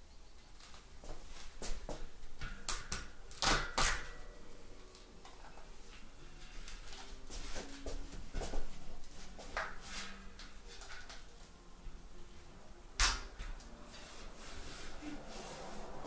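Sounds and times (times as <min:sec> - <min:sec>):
tape crackling off a roll: 0:00.6 - 0:04.3.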